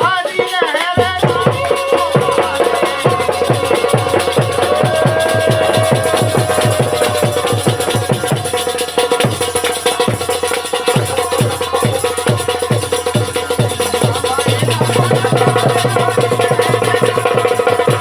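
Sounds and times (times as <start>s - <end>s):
steady drum beat: 0.0s - 18.0s.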